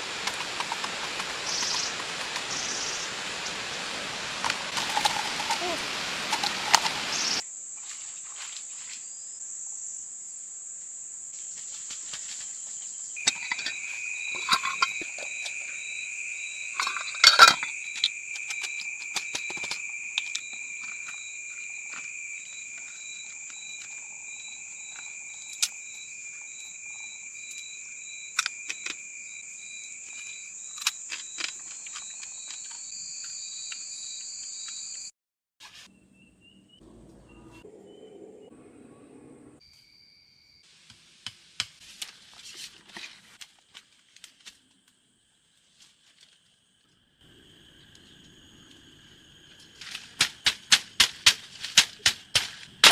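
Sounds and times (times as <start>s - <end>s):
insects trilling: 0.0s - 35.1s, 43.0s - 52.9s
pulsing insect call: 0.0s - 35.1s, 44.7s - 52.9s
lower insect trill: 1.4s - 3.2s, 4.8s - 35.1s, 43.6s - 52.9s.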